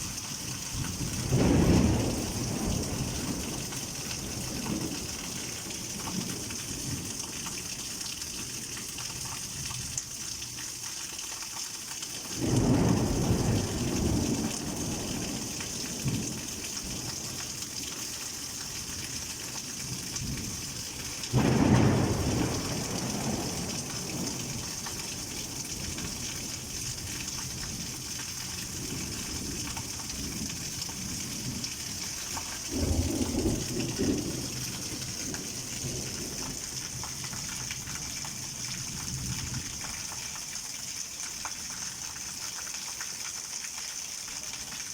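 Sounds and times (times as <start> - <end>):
thunder rolling: 0.9 - 7.1, 12.4 - 17.1, 21.3 - 27.9, 32.7 - 36.6
heavy rain hissing: 12.1 - 39.2.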